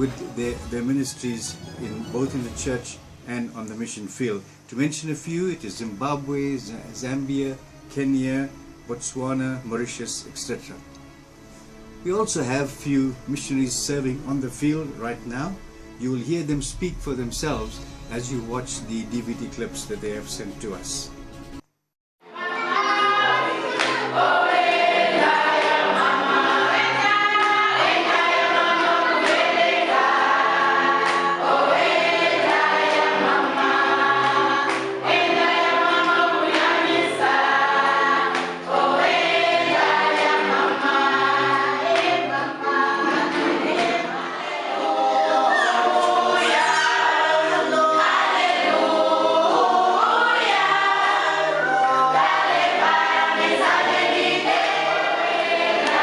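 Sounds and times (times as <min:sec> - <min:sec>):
choir singing a gospel song: 0:22.2 - 0:56.0.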